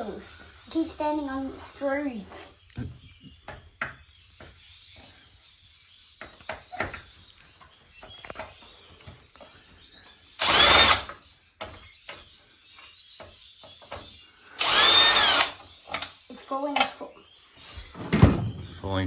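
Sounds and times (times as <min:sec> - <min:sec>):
electric screwdriver running: 0:10.4 - 0:11.1, 0:14.6 - 0:15.6.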